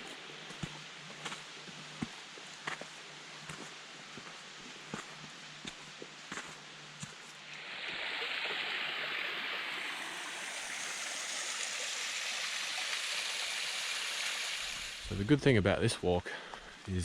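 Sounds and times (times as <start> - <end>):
small waterfall splashing: 7.5 - 15.1.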